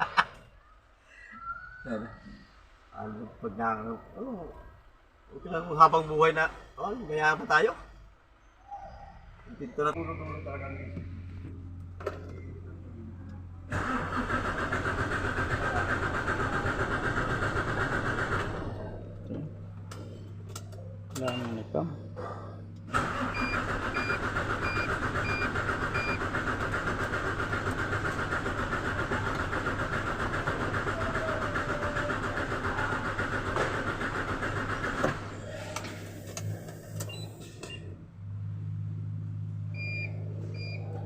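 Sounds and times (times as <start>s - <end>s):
truck engine cranking: 13.7s - 21.6s, 22.8s - 37.9s
dashboard warning beeps: 39.8s - 41.0s.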